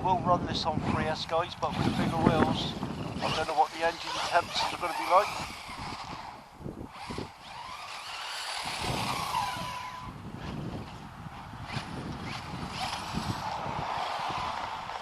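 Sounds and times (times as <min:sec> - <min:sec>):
electric motor whining: 0:01.6 - 0:15.0
tyres rumbling on road: 0:11.1 - 0:15.0.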